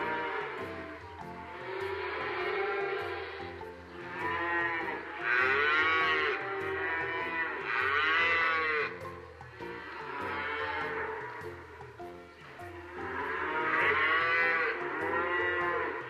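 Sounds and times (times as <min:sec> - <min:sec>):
background music with steady beat: 0:00.0 - 0:16.0
cows mooing: 0:00.0 - 0:16.0.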